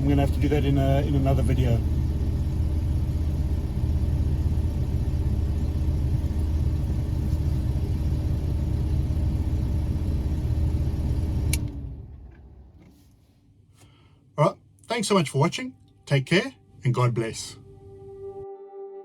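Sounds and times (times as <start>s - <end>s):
car engine idling: 0.0s - 13.0s
ignition switch click: 11.5s - 11.8s.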